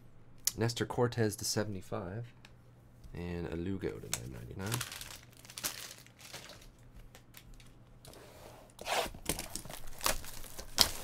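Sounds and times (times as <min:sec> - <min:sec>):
packaging crinkling and rustling: 0:03.9 - 0:07.8, 0:09.2 - 0:11.0.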